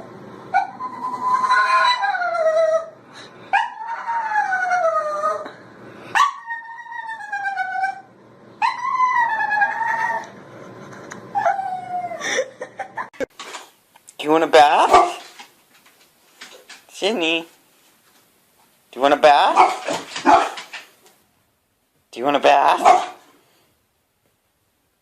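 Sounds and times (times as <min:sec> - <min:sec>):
dog howling: 0:00.5 - 0:10.3, 0:11.3 - 0:12.2.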